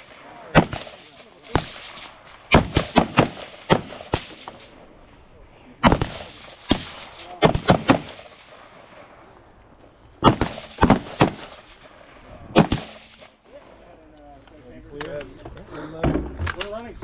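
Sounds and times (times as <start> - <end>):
gunshots with echo: 0.0 - 4.8, 5.8 - 9.2, 10.2 - 13.3.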